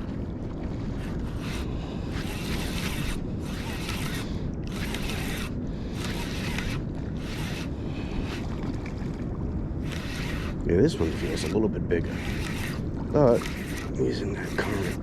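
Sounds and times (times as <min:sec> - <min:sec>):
wind and surf rumble: 0:00.0 - 0:15.0
fishing reel winding: 0:01.0 - 0:08.5, 0:09.8 - 0:12.8, 0:13.4 - 0:15.0.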